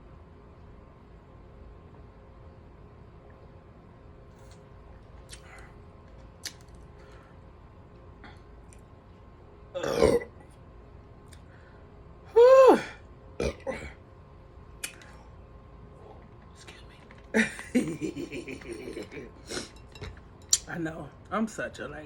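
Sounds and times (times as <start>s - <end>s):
woman burping: 9.8s - 10.4s, 13.4s - 14.0s.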